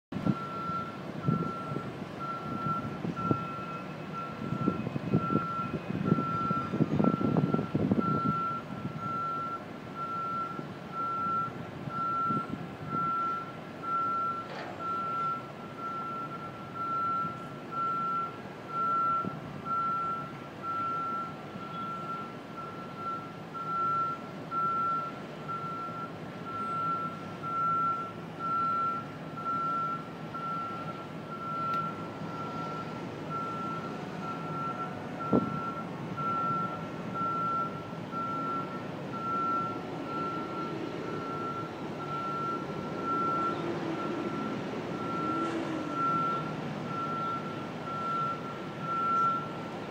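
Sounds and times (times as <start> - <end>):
distant city noise: 0.1 - 49.9
backup alarm beeping: 0.3 - 49.6.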